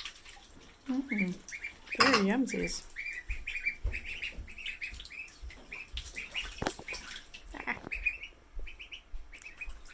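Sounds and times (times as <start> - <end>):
ducklings peeping: 0.0 - 9.9.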